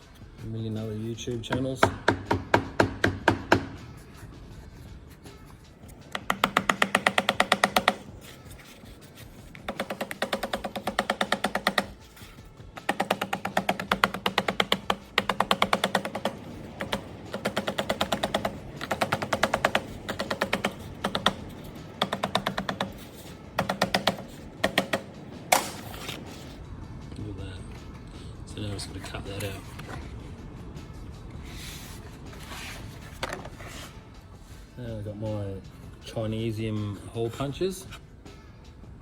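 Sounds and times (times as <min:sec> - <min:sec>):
rapid ringing hammer taps: 0:06.1 - 0:08.1, 0:09.7 - 0:12.0, 0:12.8 - 0:25.2.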